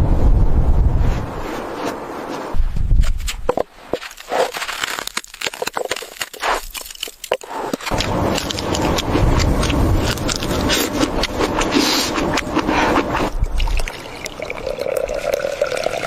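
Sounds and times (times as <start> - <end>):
liquid being poured: 13.2 - 16.0.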